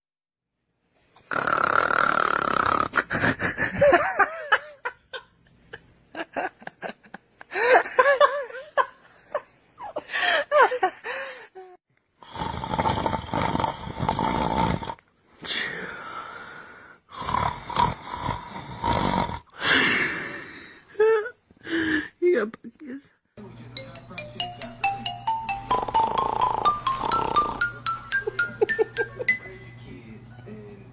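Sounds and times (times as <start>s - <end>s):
person snoring: 1.2s - 4.0s, 12.2s - 20.8s, 25.3s - 28.6s.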